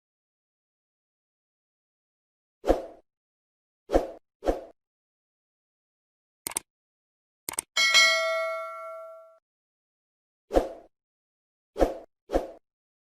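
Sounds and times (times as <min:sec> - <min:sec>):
short clicks: 0:06.4 - 0:06.7, 0:07.5 - 0:07.7
bright bell ding: 0:07.8 - 0:09.4.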